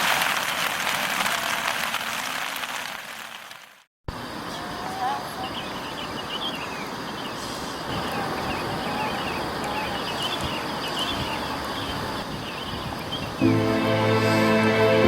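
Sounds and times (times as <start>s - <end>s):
heavy rain hissing: 13.4s - 15.0s.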